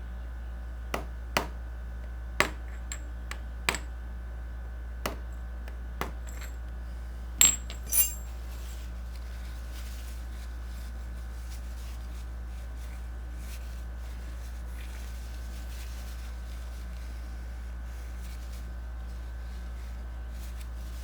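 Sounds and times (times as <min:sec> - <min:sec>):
sharp metallic taps: 0:01.0 - 0:01.6.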